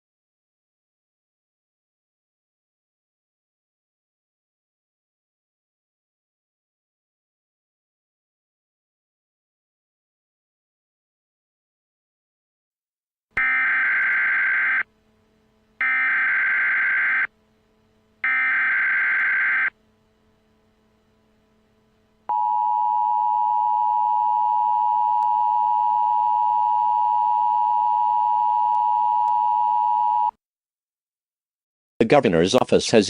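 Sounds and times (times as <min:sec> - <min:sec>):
steady two-tone alert signal: 0:13.4 - 0:14.9, 0:15.8 - 0:17.3, 0:18.2 - 0:19.8, 0:22.3 - 0:30.3
warbling data tone bursts: 0:13.4 - 0:14.9, 0:15.8 - 0:17.3, 0:18.2 - 0:19.8.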